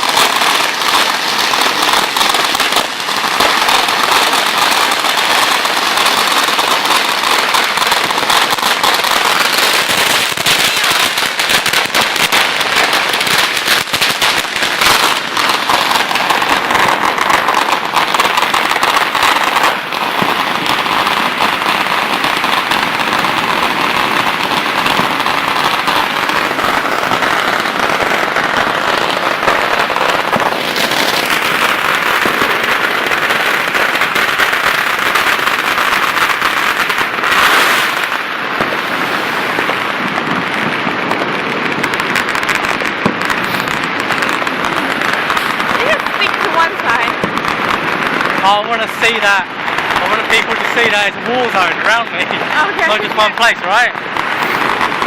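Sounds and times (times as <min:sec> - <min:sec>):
firecrackers crackling: 0:00.0 - 0:55.0.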